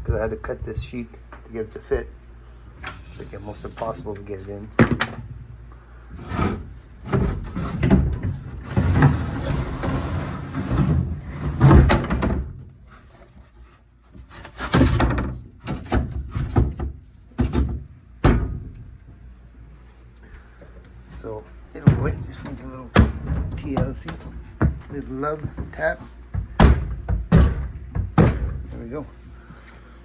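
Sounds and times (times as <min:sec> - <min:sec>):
plywood panel scraping: 0:02.8 - 0:04.6, 0:06.1 - 0:17.9, 0:21.8 - 0:28.8
wooden knocks and thumps: 0:14.2 - 0:18.8, 0:21.8 - 0:28.8.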